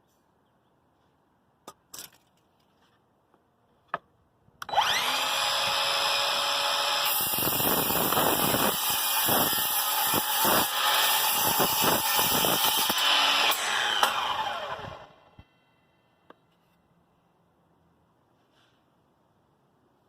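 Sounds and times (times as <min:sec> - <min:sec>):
miter saw cutting wood: 0:04.7 - 0:15.4.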